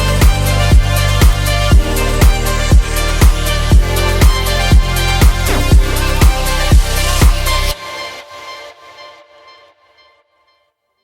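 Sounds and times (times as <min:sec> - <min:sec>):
electronic dance music: 0:00.0 - 0:07.8
held bass line: 0:00.0 - 0:07.8
kick drum beat: 0:00.2 - 0:07.4.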